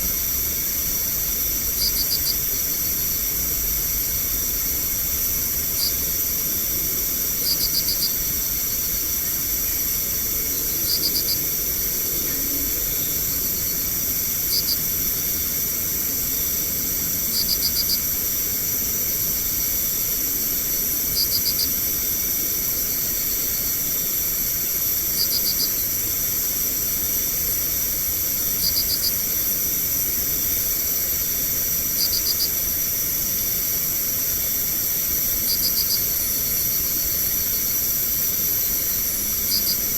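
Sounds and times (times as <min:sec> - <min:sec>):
cricket chirping in bursts: 0:00.0 - 0:39.9
high-pitched insect chorus: 0:00.0 - 0:39.9.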